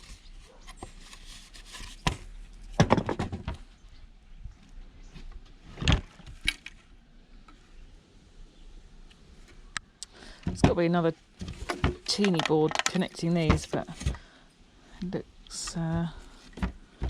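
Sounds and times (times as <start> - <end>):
plastic parts knocking and clattering: 2.0 - 3.7, 10.4 - 10.8, 11.4 - 14.3, 15.7 - 17.0.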